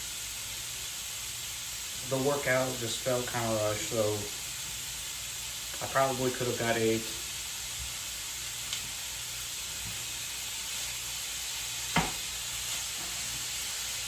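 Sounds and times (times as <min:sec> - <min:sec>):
food sizzling in a frying pan: 0:00.0 - 0:14.0
faint tap: 0:12.0 - 0:12.2
utensil knocking against pan: 0:12.0 - 0:12.2.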